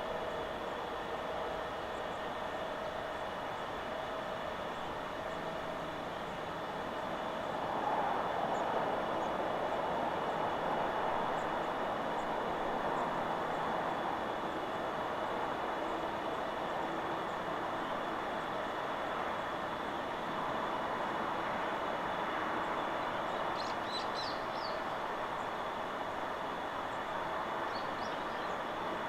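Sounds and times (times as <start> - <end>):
wind rushing through trees: 0.0 - 29.0
faint bird chirps: 23.6 - 25.0.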